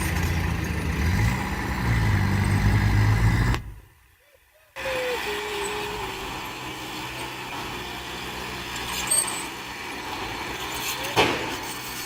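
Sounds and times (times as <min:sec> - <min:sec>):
diesel machinery running: 0:00.0 - 0:04.1, 0:04.7 - 0:12.0.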